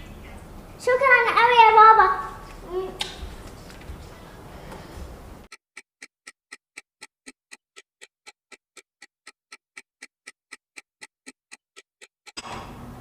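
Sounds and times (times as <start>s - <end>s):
clock ticking: 5.4s - 12.6s.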